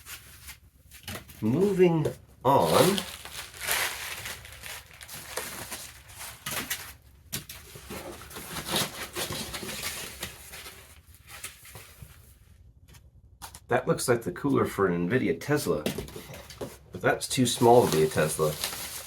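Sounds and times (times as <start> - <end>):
packaging rustling and crinkling: 2.5 - 12.4, 16.0 - 19.0.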